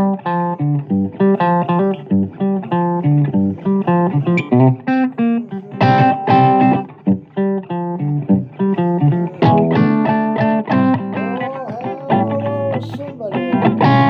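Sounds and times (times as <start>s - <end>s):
blues guitar playing: 0.0s - 14.0s.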